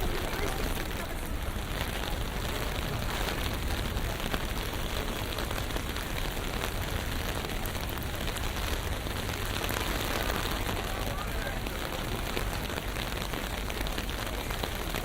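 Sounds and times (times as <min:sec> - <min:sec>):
rain pattering: 0:00.0 - 0:15.0.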